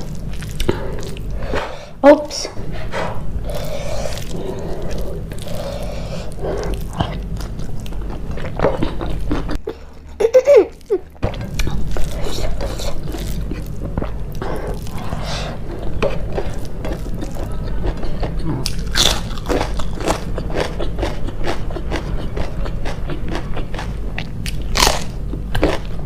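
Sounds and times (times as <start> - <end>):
food chewing and crunching: 0.0 - 1.7, 3.4 - 26.0
low hum: 0.0 - 26.0
person humming: 18.3 - 18.7.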